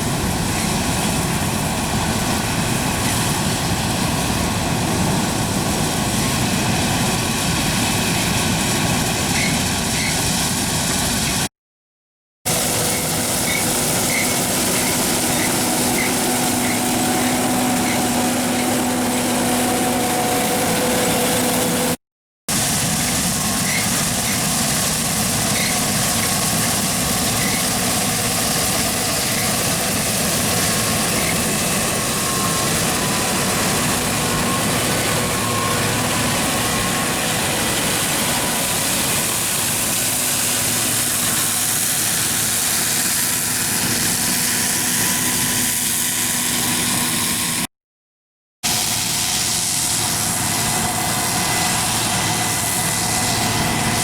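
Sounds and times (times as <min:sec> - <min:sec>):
combine engine drone: 0:00.0 - 0:11.5, 0:12.5 - 0:47.7, 0:48.6 - 0:54.0
machinery whine: 0:12.5 - 0:47.7, 0:48.7 - 0:54.0.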